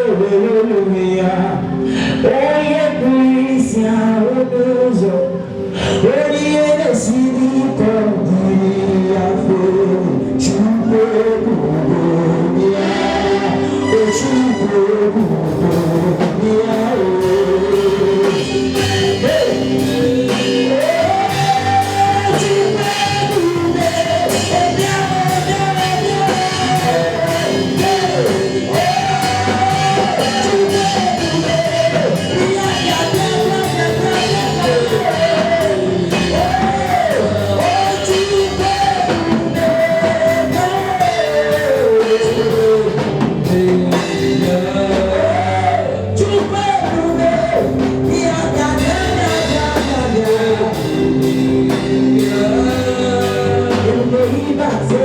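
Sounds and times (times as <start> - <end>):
lead singer holding long notes: 0.0 - 55.0
band with drums: 13.8 - 55.0.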